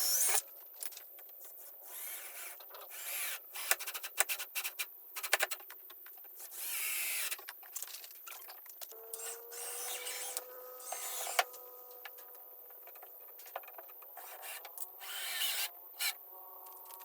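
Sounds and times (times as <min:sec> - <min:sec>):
tool grinding wood: 0:09.0 - 0:17.0.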